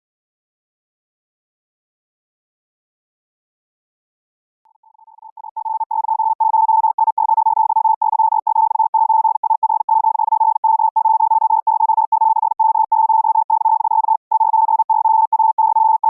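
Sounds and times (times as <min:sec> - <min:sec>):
high-speed morse code tone: 0:04.7 - 0:16.0.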